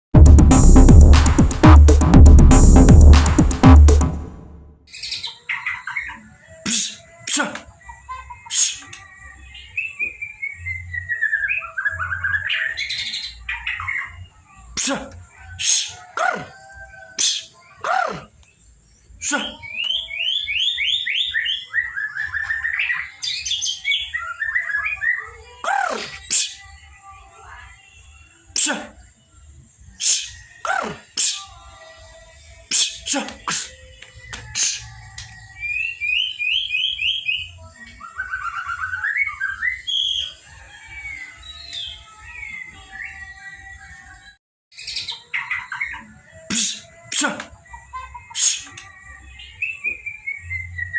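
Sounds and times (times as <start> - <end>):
bird harsh call: 4.9 - 9.1, 44.8 - 48.9
bird singing whistled notes: 4.9 - 14.4, 18.4 - 50.9.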